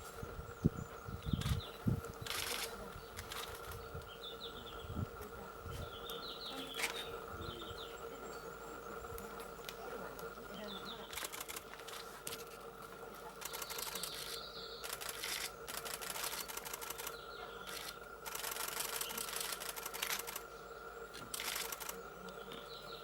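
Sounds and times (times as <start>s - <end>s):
camera shutter clicks: 21.3s - 22.0s.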